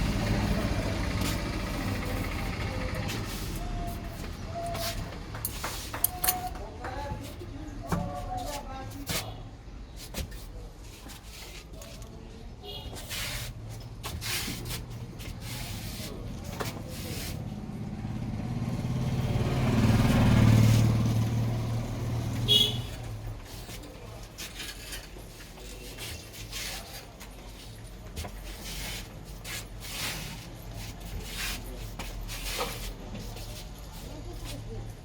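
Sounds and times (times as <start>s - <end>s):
vehicle engine passing: 0.0s - 5.4s, 15.0s - 23.3s.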